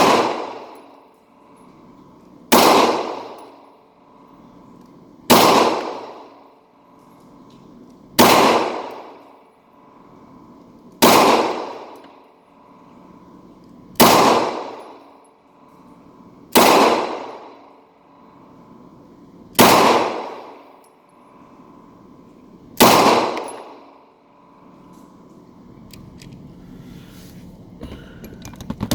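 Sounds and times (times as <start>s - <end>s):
pistol shots with echo: 0.0s - 1.0s, 2.5s - 3.7s, 5.3s - 6.6s, 8.2s - 9.5s, 11.0s - 12.7s, 13.9s - 15.2s, 16.5s - 18.3s, 19.5s - 20.9s, 22.8s - 24.5s.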